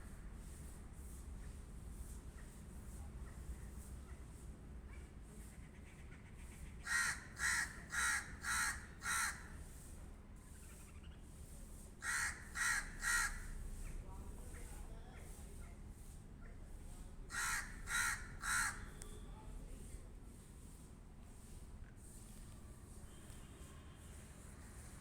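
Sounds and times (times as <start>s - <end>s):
crow cawing: 6.8s - 9.5s, 12.0s - 13.6s, 17.3s - 19.0s.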